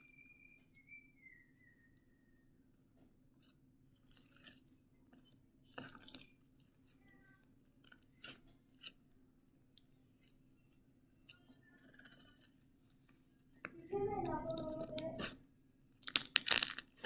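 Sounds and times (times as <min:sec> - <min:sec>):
sticky slime clicks and crackles: 0:16.0 - 0:17.0.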